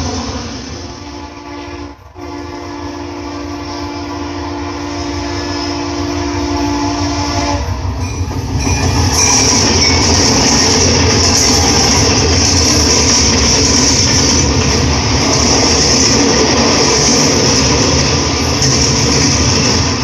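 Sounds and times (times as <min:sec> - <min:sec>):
passing train rushing: 0:00.0 - 0:20.0
two-tone train horn: 0:00.9 - 0:12.3.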